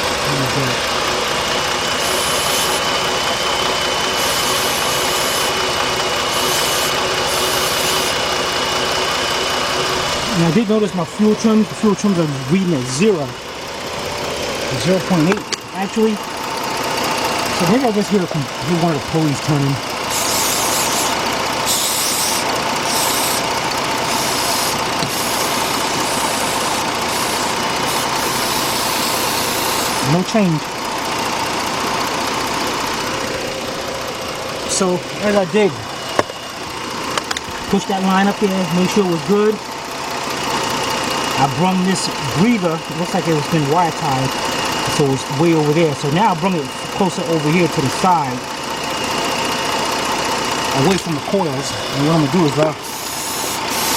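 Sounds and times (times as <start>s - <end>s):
car engine idling: 0.0s - 53.9s
short bursts of hiss: 52.8s - 53.9s.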